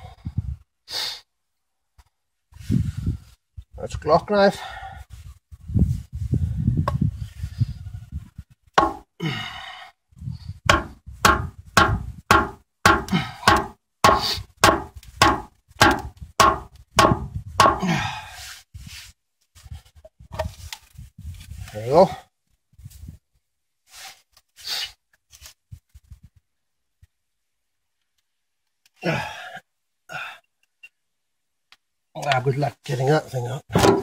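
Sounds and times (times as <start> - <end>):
hammer striking knife spine: 10.7 - 17.8
handling noise: 33.7 - 34.0.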